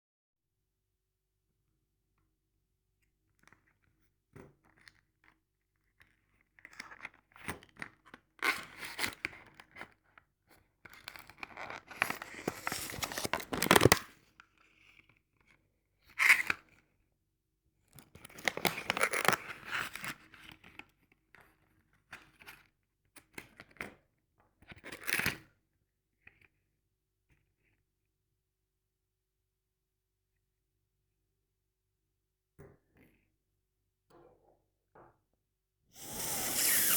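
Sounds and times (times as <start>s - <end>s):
tearing and crinkling: 11.9s - 14.0s.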